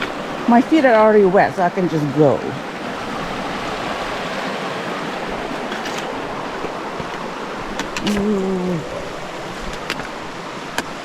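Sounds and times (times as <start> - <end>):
river water rushing: 0.0 - 11.0
person humming: 8.0 - 9.3.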